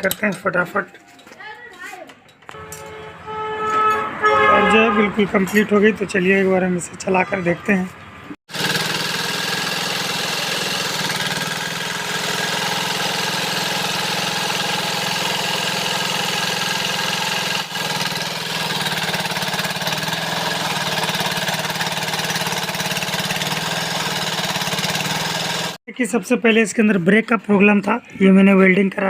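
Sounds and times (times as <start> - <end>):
motorcycle engine running: 8.5 - 25.8.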